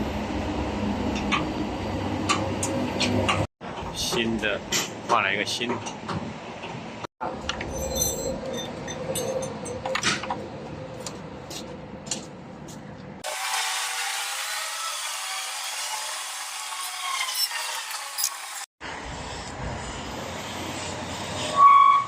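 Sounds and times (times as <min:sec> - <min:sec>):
mechanism squeaking and creaking: 0:07.3 - 0:10.6, 0:16.9 - 0:18.7.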